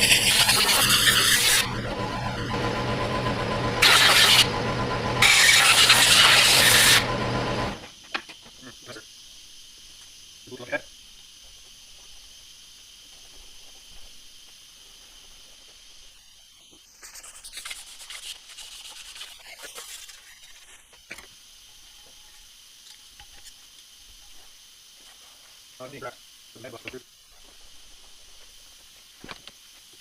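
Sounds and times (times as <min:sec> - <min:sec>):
scraping or rubbing: 0:00.0 - 0:01.7
faint high hiss: 0:07.9 - 0:30.0.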